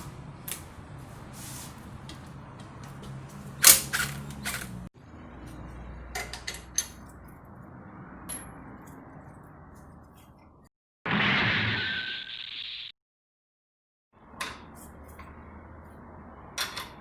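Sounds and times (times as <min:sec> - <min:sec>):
hand tools clanking on metal: 0:03.0 - 0:04.8, 0:06.1 - 0:07.2.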